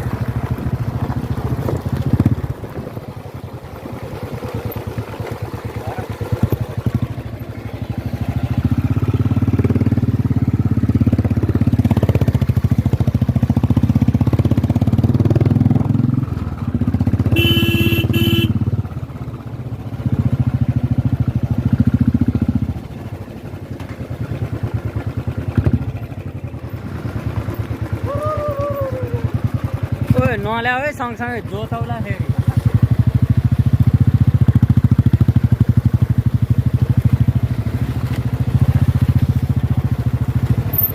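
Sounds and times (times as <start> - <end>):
motorcycle engine running: 0.0 - 40.9
horn beeps: 17.3 - 18.6.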